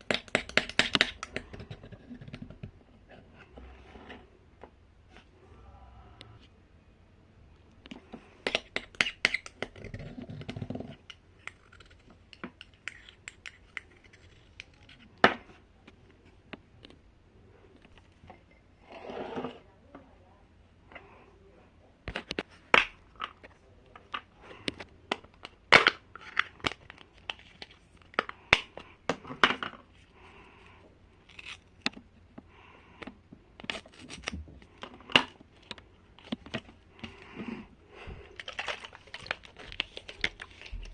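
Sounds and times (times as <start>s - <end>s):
small objects clicking and tapping: 0.0s - 2.7s, 7.8s - 9.8s, 10.4s - 14.9s.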